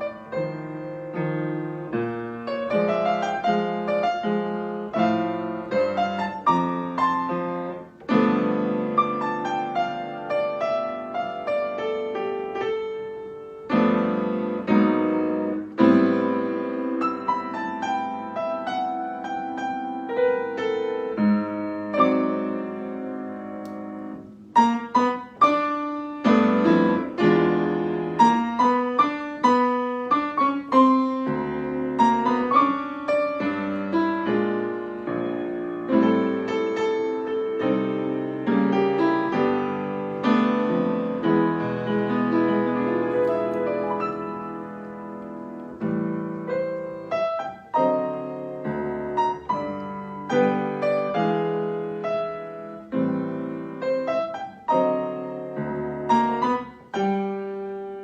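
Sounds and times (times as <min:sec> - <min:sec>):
slow piano chords and melody: 0:00.0 - 0:58.0.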